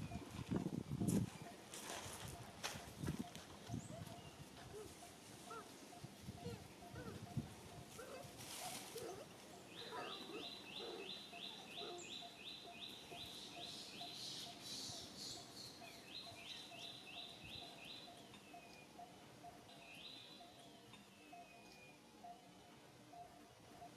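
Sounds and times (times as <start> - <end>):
rhythmic pulsing animal call: 1.4 - 23.9
faint chirps: 3.7 - 23.9.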